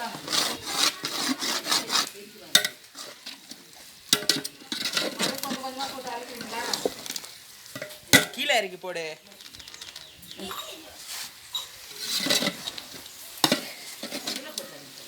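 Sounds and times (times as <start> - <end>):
utensil scraping a pot: 0.0 - 8.4, 10.8 - 15.0
food sizzling in a pot: 0.0 - 15.0
knocks against a pot: 4.1 - 5.6, 7.7 - 8.4.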